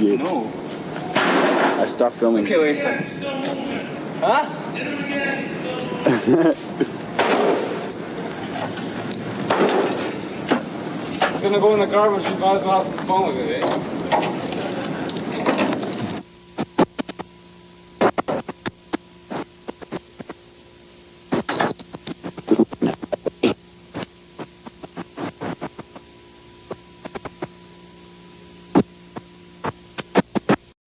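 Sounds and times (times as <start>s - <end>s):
microwave oven humming: 0.0s - 30.7s
sharp snaps and pops: 16.6s - 17.3s.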